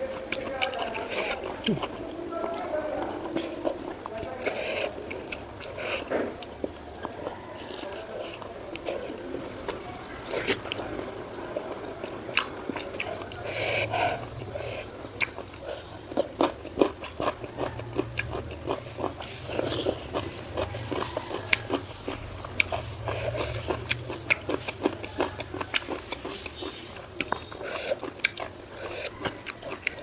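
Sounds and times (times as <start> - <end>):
chewing with wet mouth clicks: 0.0 - 30.0.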